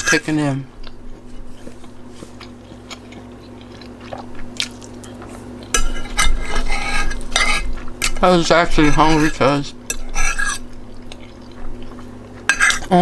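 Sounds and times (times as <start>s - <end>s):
cutlery scraping a plate: 0.0s - 0.5s, 5.2s - 13.0s
soft chewing: 0.7s - 8.2s, 8.9s - 13.0s.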